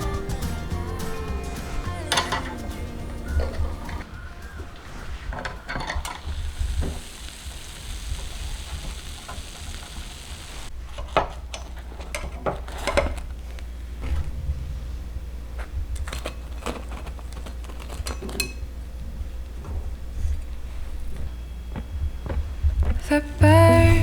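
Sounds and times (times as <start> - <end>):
even hiss: 0.0 - 10.7.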